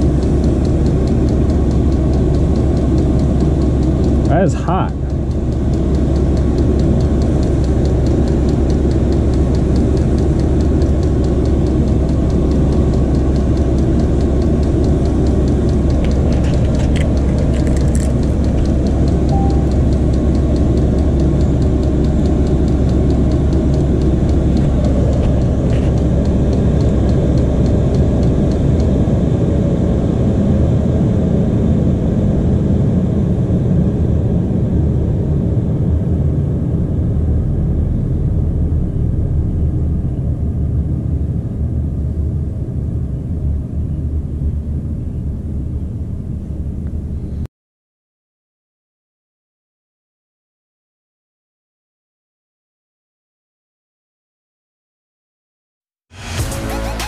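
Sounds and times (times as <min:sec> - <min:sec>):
faint fast ticking: 0:00.0 - 0:28.9
heater burner and blower rumble: 0:00.0 - 0:47.5.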